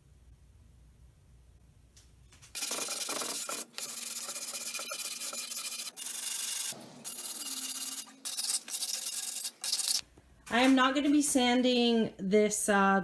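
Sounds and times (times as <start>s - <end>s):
sanding wood: 2.6s - 5.9s.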